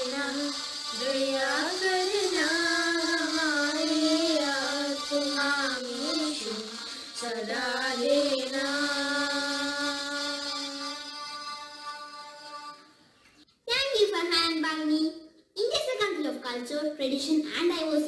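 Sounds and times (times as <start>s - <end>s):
woman singing slowly: 0.0s - 11.0s.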